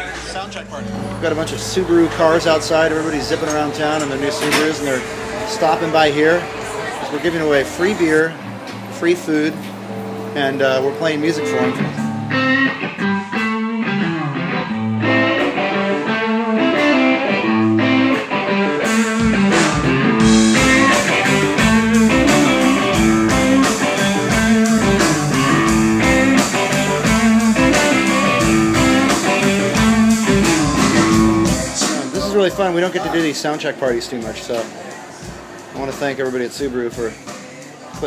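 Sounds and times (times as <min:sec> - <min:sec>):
blues rock guitar: 0:09.6 - 0:33.3
band with beat and bass: 0:11.8 - 0:38.0.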